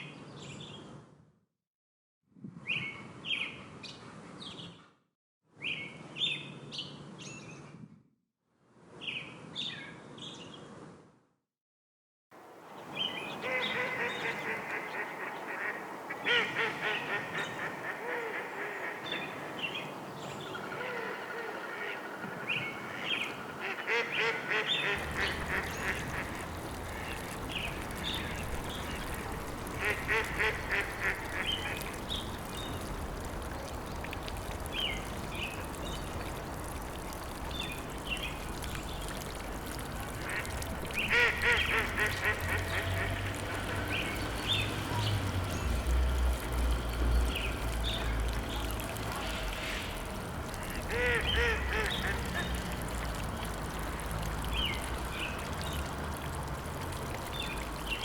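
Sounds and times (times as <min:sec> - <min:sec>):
ducks quacking: 0:13.4 - 0:19.4, 0:20.7 - 0:32.9, 0:39.6 - 0:44.7, 0:50.5 - 0:52.8.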